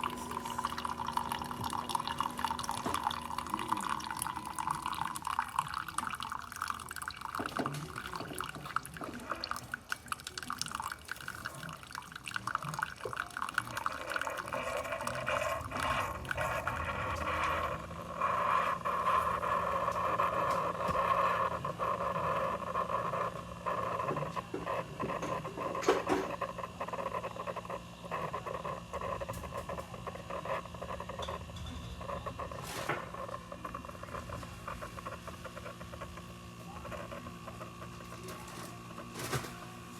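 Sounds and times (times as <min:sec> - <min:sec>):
coffee pattering into cup: 0:00.0 - 0:17.6
low steady hum: 0:00.0 - 0:19.5.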